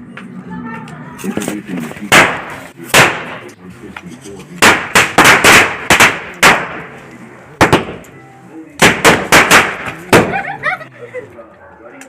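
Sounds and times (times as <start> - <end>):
firecrackers banging: 1.3 - 3.6, 4.6 - 8.1, 8.8 - 10.6.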